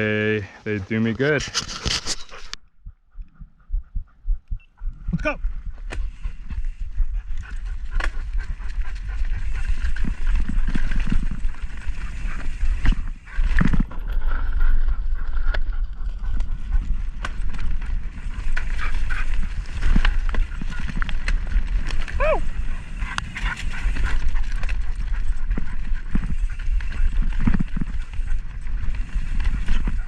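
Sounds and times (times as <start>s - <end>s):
wind on microphone: 1.4s - 30.0s
bike knocking and rattling: 5.9s - 30.0s
tyres on dirt and rock: 16.3s - 30.0s.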